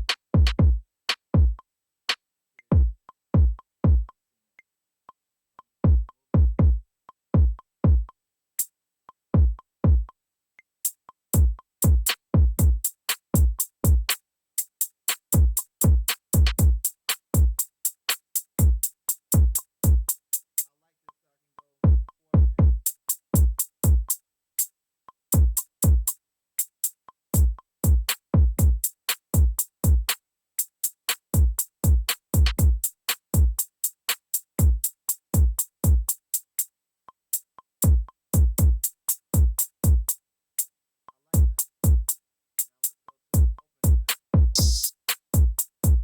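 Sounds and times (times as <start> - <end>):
deep kick drums: 0.0 - 0.8, 1.4 - 1.6, 2.7 - 4.1, 5.8 - 6.8, 7.4 - 8.1, 9.4 - 10.1, 11.4 - 12.8, 21.8 - 22.8, 31.4 - 32.8, 41.4 - 42.1, 43.4 - 46.0
crisp hi-hat hits: 0.0 - 1.6, 10.9 - 20.7, 25.4 - 36.7, 37.4 - 40.7, 41.4 - 46.0.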